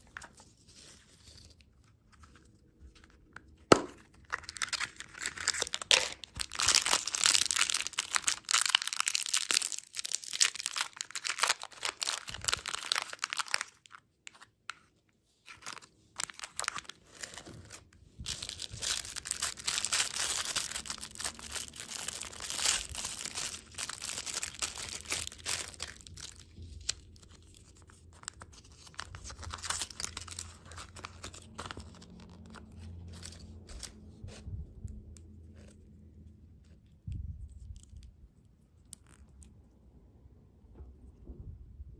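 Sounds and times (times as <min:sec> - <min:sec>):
plastic wrappers crinkling and tearing: 0:03.0 - 0:34.3.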